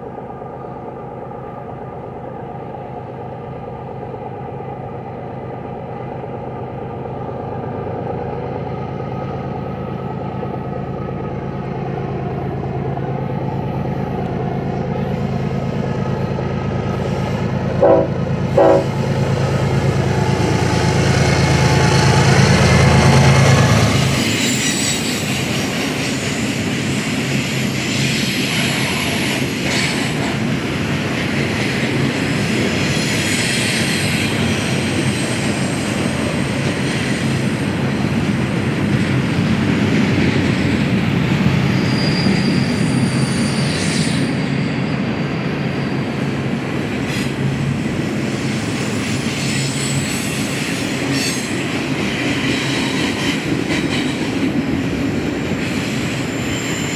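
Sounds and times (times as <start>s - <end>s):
freight train rumbling and clattering: 0.0s - 56.9s
high wheel squeals: 18.6s - 25.6s, 41.5s - 46.2s, 48.2s - 54.2s, 55.6s - 56.9s.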